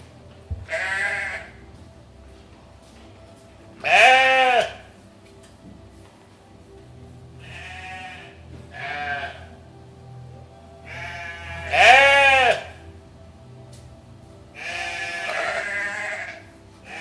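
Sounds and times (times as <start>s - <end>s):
goats bleating: 0.7s - 1.6s, 3.8s - 4.9s, 7.4s - 9.5s, 10.8s - 12.8s, 14.6s - 17.0s.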